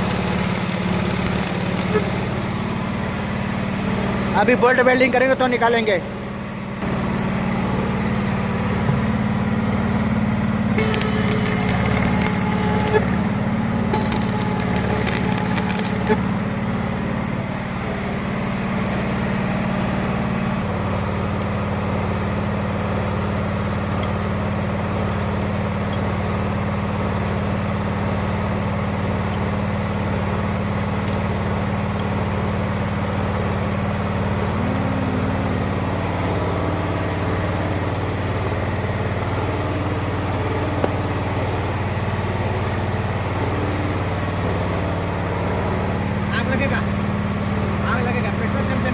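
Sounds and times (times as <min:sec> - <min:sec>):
arc welding crackle: 0:00.0 - 0:02.6, 0:10.8 - 0:13.1, 0:13.9 - 0:16.2
engine running: 0:00.0 - 0:48.9.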